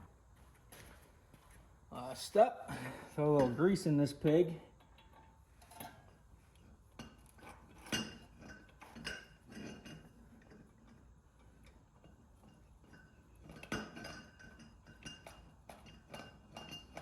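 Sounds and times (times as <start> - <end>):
light metallic clicks and clinks: 3.1 - 17.0.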